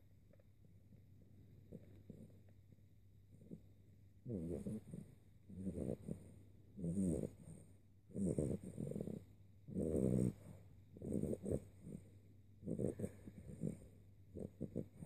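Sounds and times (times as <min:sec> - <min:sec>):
rasping snores: 0:06.8 - 0:07.4, 0:08.1 - 0:12.0, 0:12.6 - 0:15.0
quiet breathing: 0:10.3 - 0:15.0.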